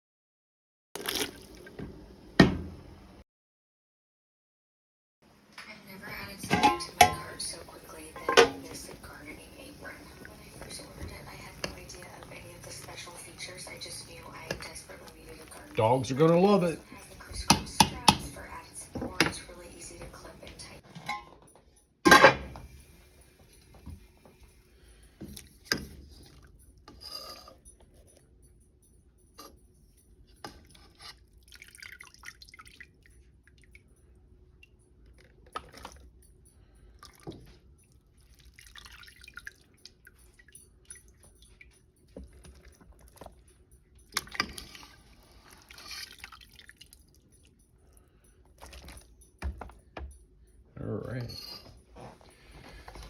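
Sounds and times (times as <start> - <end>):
wet liquid rustling: 1.0 - 1.8, 30.6 - 33.9, 36.8 - 49.2
light knocks and clinks: 47.1 - 53.0.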